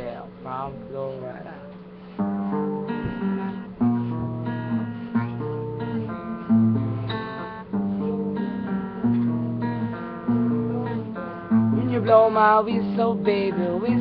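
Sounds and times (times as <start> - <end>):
acoustic guitar strumming chords: 0.0 - 14.0.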